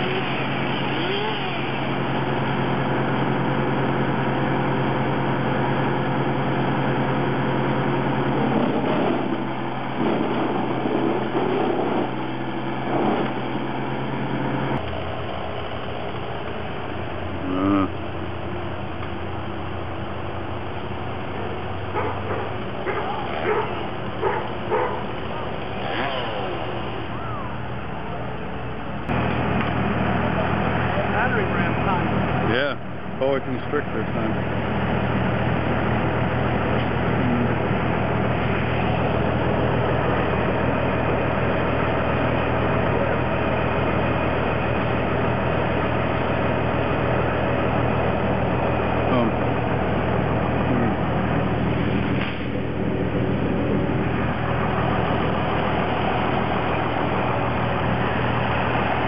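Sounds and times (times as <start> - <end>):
constant low hum: 0.0 - 59.0
heavy engine running: 0.0 - 59.0.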